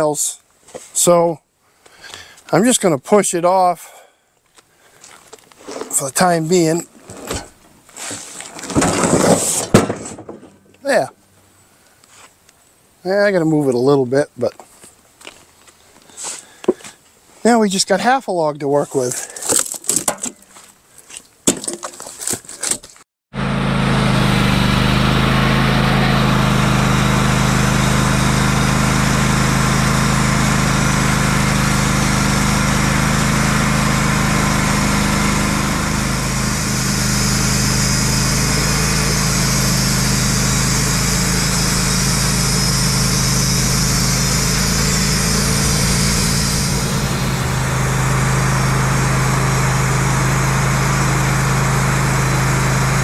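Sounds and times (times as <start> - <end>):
band sawmill engine running: 23.4 - 53.0.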